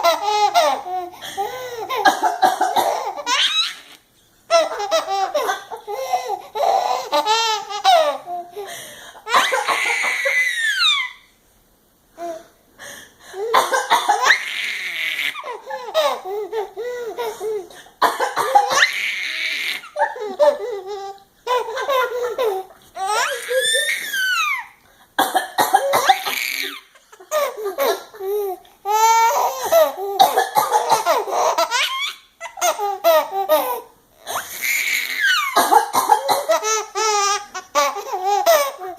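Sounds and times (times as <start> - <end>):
baby laughing and squealing: 2.9 - 8.7, 9.3 - 11.3, 18.6 - 24.8, 26.0 - 30.2, 31.0 - 35.6
woman fake coughing and sneezing: 18.0 - 18.8, 25.2 - 26.7, 35.6 - 36.6.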